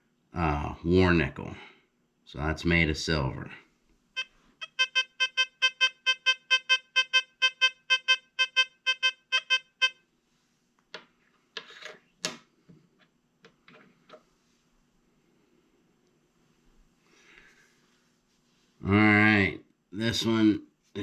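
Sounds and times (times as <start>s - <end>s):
metal detector short pitched beeps: 4.2s - 10.0s.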